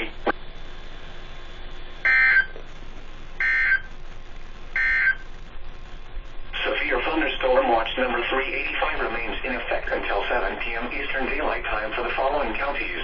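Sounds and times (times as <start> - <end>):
steady radio hiss: 0.0 - 13.0
screechy data tones: 2.0 - 2.6, 3.4 - 4.0, 4.7 - 5.4.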